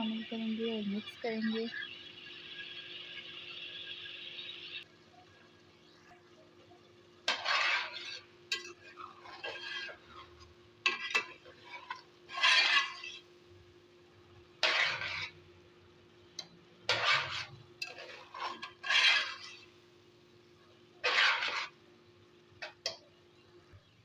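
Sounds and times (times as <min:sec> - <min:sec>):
faint steady hum: 0:00.0 - 0:07.4, 0:08.0 - 0:24.0
spoon scraping cooking pot: 0:07.3 - 0:13.3, 0:14.6 - 0:15.4, 0:16.9 - 0:19.8, 0:21.0 - 0:21.8.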